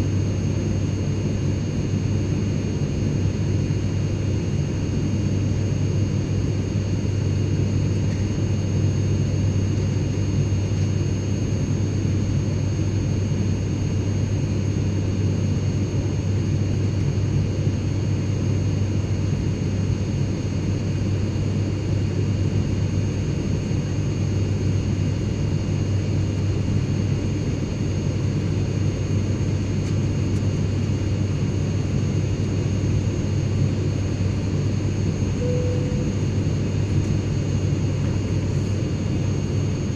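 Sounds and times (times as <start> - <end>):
airplane engine and airflow rumble: 0.0 - 39.9
faint high-pitched whines: 35.3 - 36.8.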